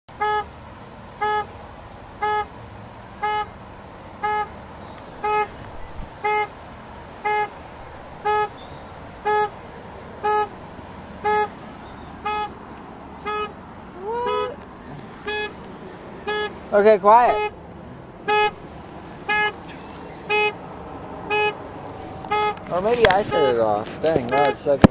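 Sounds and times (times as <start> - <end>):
car alarm horn blasts: 0.1 - 0.5, 1.2 - 1.5, 2.2 - 2.6, 3.2 - 3.6, 4.2 - 4.6, 5.2 - 5.6, 6.2 - 6.5, 7.2 - 7.6, 8.2 - 9.6, 10.2 - 10.5, 11.2 - 12.6, 13.2 - 13.6, 14.2 - 14.6, 15.2 - 15.6, 16.2 - 16.6, 17.2 - 17.6, 18.2 - 18.6, 19.2 - 20.6, 21.3 - 21.6, 22.2 - 24.9.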